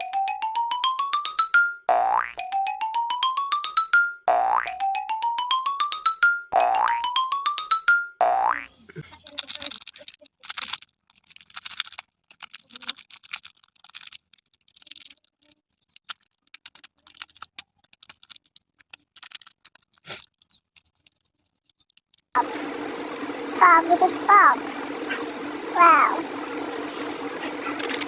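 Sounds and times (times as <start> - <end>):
plastic wrapper crinkling: 9.2 - 22.4, 27.8 - 28.0.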